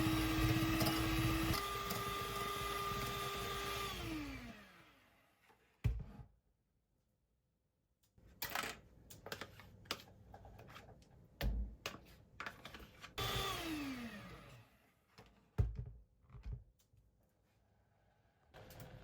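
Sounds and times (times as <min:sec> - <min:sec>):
kitchen appliance motor spinning: 0:00.0 - 0:05.2, 0:13.2 - 0:14.8.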